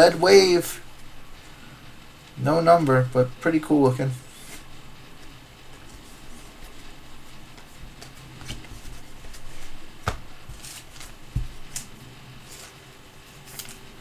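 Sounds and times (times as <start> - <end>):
cards sliding and swishing: 4.2 - 4.7, 7.6 - 13.8.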